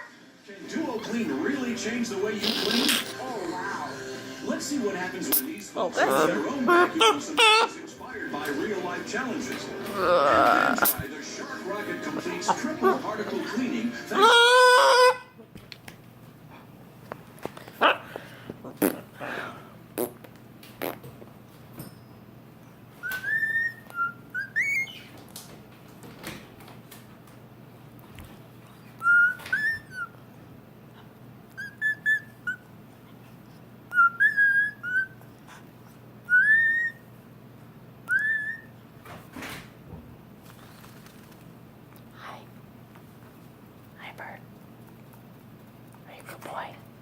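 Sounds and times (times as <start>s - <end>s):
parrot whistling: 6.1s - 7.8s, 14.1s - 15.3s, 23.0s - 25.1s, 29.0s - 30.2s, 31.6s - 32.7s, 33.9s - 35.2s, 36.3s - 37.1s, 38.1s - 38.8s.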